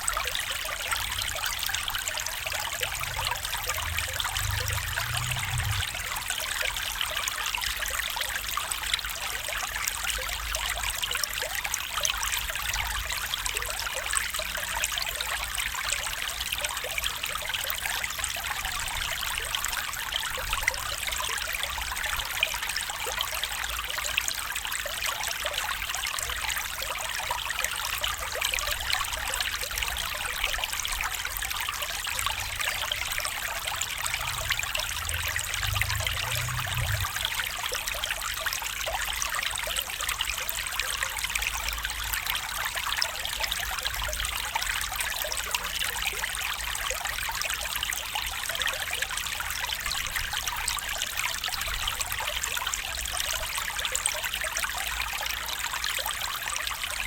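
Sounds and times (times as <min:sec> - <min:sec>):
stream babbling: 0:00.0 - 0:10.3, 0:18.9 - 0:47.9.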